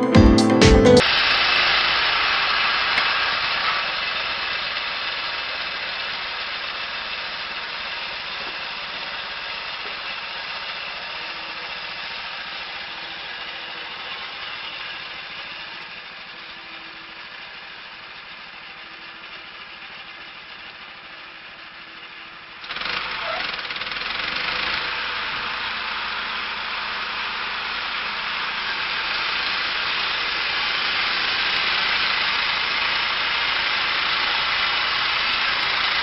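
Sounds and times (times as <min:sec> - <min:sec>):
machine hissing: 0:28.1 - 0:36.0.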